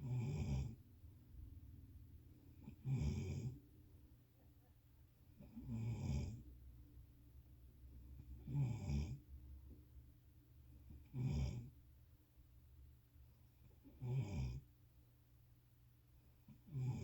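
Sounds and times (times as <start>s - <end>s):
loud snoring: 0.0s - 0.8s, 2.6s - 3.6s, 5.4s - 6.5s, 8.4s - 9.2s, 11.1s - 11.7s, 14.0s - 14.6s, 16.7s - 17.0s.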